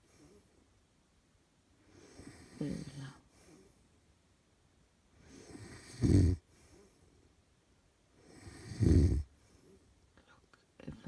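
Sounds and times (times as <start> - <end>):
man snoring: 5.3 - 6.4, 8.3 - 9.3.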